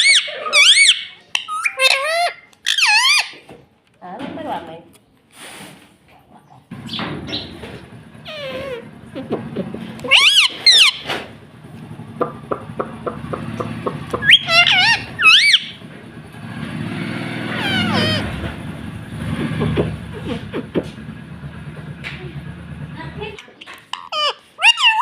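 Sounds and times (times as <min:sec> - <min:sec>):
parakeet screeching: 0:00.0 - 0:03.4, 0:08.2 - 0:09.0, 0:10.0 - 0:11.3, 0:13.4 - 0:15.9, 0:16.9 - 0:18.6, 0:23.8 - 0:25.0.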